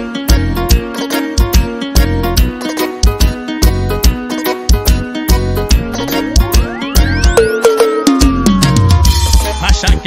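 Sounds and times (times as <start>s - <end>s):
bass line: 1.6s - 10.0s
electronic keyboard synth sweeps: 5.6s - 10.0s.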